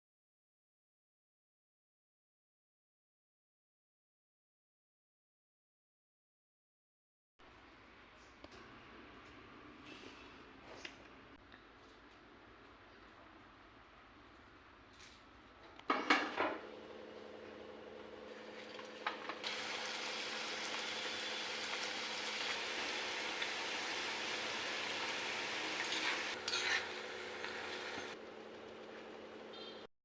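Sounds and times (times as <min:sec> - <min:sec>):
metal utensil clattering on pan: 0:15.9 - 0:16.6, 0:25.8 - 0:27.0
food sizzling in hot oil: 0:19.4 - 0:28.2.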